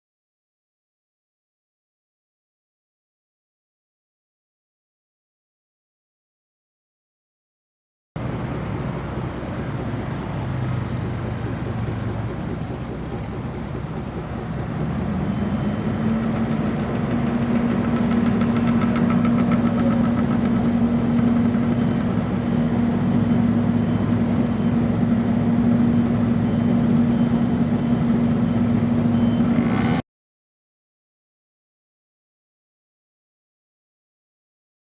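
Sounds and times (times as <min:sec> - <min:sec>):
street noise: 0:08.2 - 0:30.0
vehicle engine running: 0:08.2 - 0:30.0.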